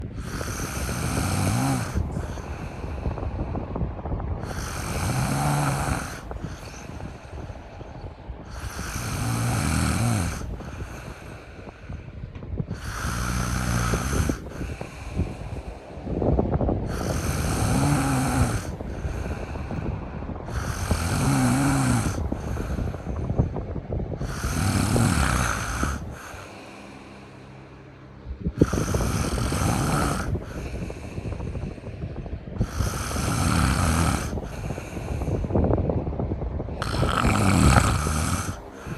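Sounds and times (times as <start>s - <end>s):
cat snoring: 0.0s - 2.9s, 4.4s - 7.1s, 8.5s - 11.3s, 12.7s - 15.6s, 16.9s - 19.8s, 20.4s - 23.1s, 24.2s - 26.8s, 28.5s - 31.0s, 32.6s - 35.2s, 36.8s - 38.9s.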